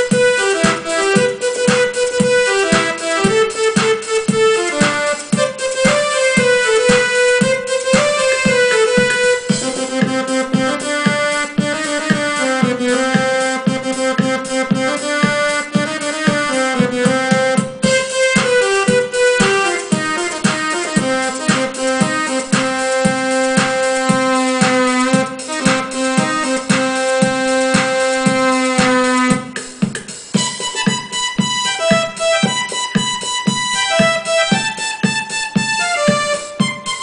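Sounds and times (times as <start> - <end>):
electronic keyboard melody: 0.0 - 37.0
fast electronic beat: 0.0 - 37.0.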